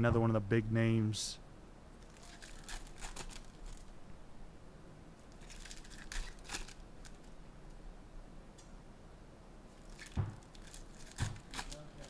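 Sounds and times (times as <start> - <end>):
plastic and foil wrappers crinkling: 2.0 - 3.9, 5.3 - 7.4, 9.8 - 12.0.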